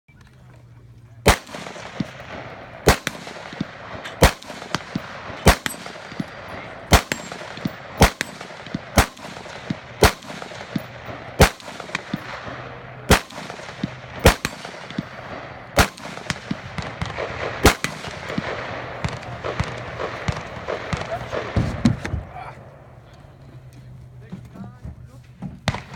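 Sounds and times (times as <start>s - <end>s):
rifle shots: 1.2s - 23.0s, 25.6s - 25.9s
faint distant gunshots: 1.2s - 24.0s, 25.6s - 25.9s.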